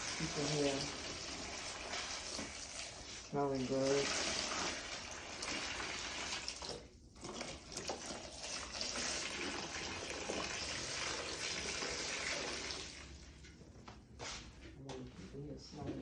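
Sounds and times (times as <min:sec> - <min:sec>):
water running from a tap: 0:00.0 - 0:13.2.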